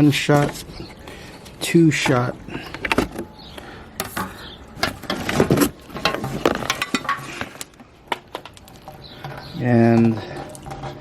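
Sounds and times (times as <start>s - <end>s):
objects clicking and rattling: 4.0s - 11.0s.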